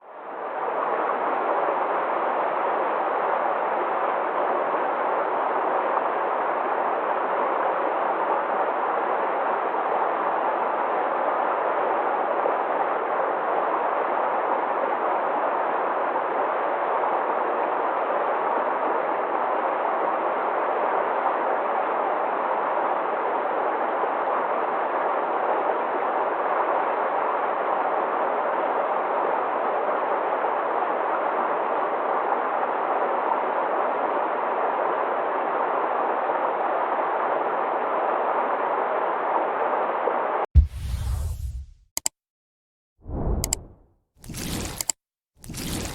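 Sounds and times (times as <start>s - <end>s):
deep low boom: 40.6s - 41.8s.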